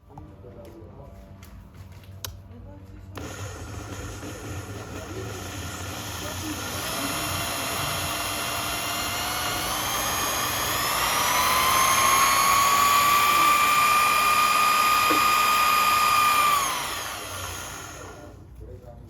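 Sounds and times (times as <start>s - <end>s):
lathe motor whining: 3.2s - 18.4s.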